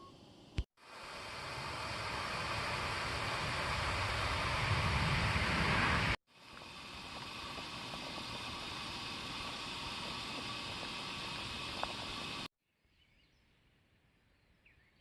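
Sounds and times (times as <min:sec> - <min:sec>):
steady hissing noise: 0:00.0 - 0:12.5
faint ticks: 0:10.3 - 0:12.2.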